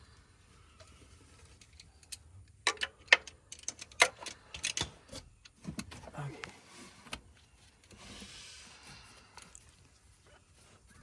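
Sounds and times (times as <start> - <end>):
metallic clicks of hand tools: 1.6 - 5.6.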